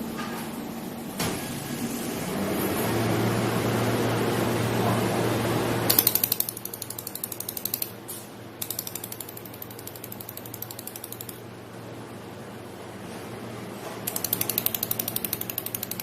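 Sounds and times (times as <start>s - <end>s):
laser welder clicking: 5.9s - 8.0s, 8.6s - 11.4s, 14.1s - 16.0s.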